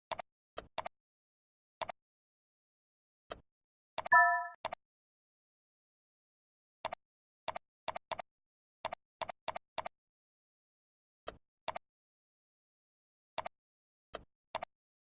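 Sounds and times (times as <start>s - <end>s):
computer mouse clicking: 6.8s - 8.2s, 8.8s - 9.9s, 14.2s - 14.7s.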